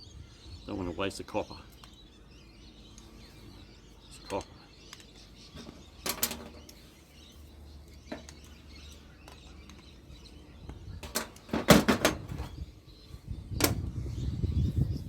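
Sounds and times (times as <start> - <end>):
metallic knocks and clicks: 5.6 - 6.8, 11.0 - 12.5.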